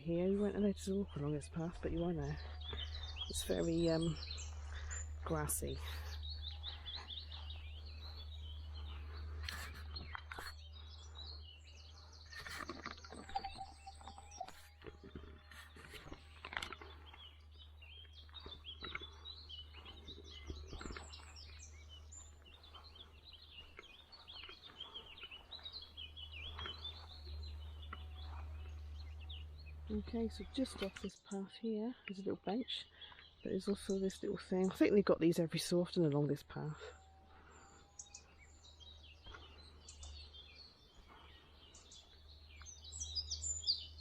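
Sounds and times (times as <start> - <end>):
steady low rumble: 0.0 - 12.4, 15.4 - 31.2
songbirds chirping and singing: 0.0 - 44.0.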